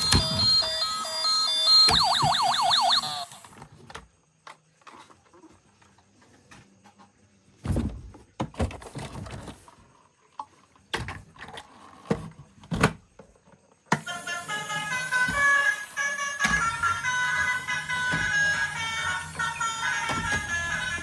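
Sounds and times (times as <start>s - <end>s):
toy vehicles knocking and clunking: 0.0s - 6.0s, 10.3s - 21.0s.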